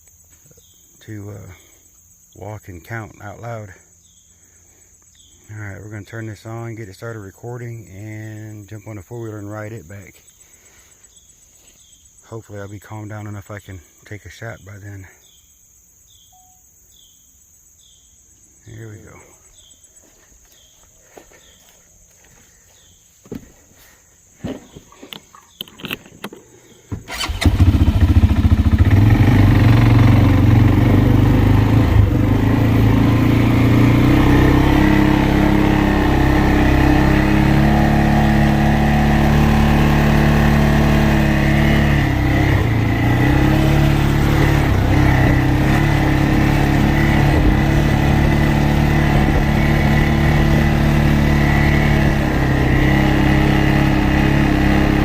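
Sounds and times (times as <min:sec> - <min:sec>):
faint insect trill: 0:00.0 - 0:28.9
quad bike engine running: 0:26.9 - 0:55.0.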